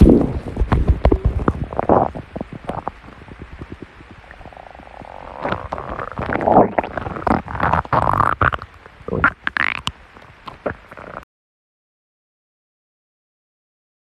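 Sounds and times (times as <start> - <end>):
stomach growling: 0.0 - 11.2.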